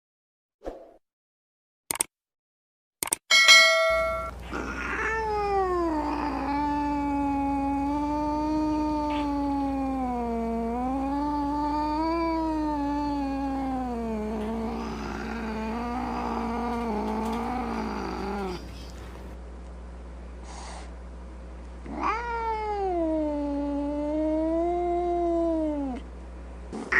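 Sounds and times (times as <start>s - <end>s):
steady tone: 3.3s - 4.4s
low steady hum: 3.3s - 26.9s
cat-like yowl: 4.5s - 18.7s, 21.9s - 26.0s.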